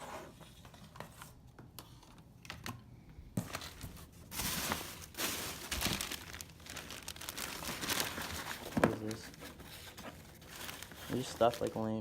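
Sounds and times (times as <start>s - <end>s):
packaging rustling and crinkling: 3.4s - 12.0s.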